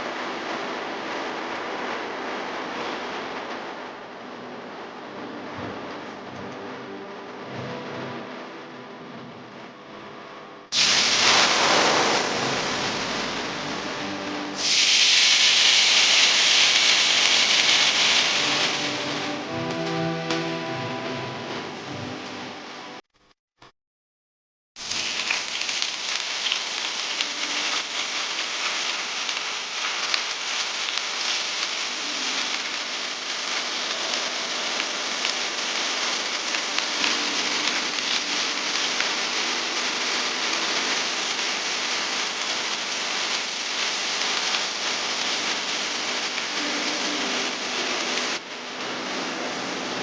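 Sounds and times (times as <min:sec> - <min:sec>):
food sizzling in hot oil: 0:10.7 - 0:19.6, 0:24.8 - 0:50.0.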